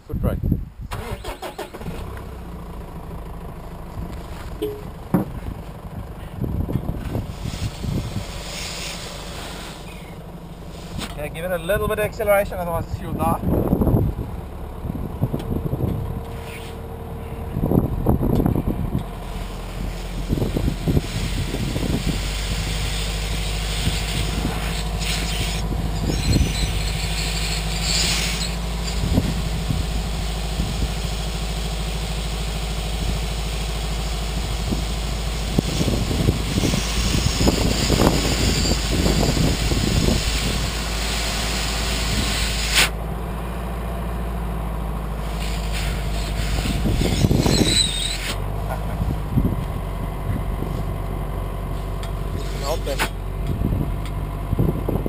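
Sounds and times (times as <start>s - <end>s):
pickup engine idling: 0.6s - 55.0s
clunks and thumps: 4.2s - 5.8s
brief hissing rushes: 7.3s - 11.1s, 36.5s - 43.0s.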